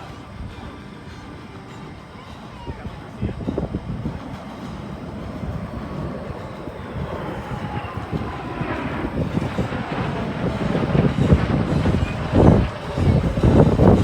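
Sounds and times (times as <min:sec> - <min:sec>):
jet engines roaring: 0:00.0 - 0:14.0
faint whine sliding down: 0:03.0 - 0:14.0.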